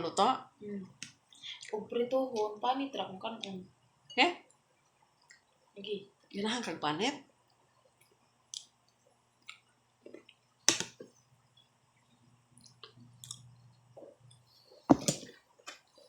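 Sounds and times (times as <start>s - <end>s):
quiet chewing: 7.8s - 10.5s.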